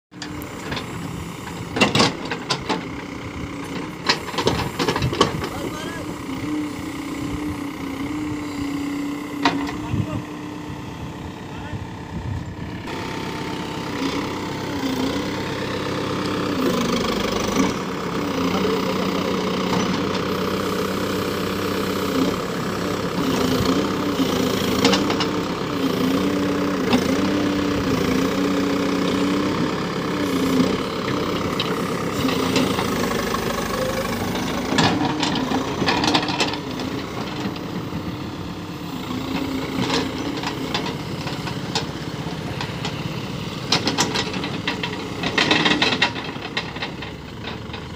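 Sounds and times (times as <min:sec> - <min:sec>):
diesel engine under load: 0:00.1 - 0:47.9.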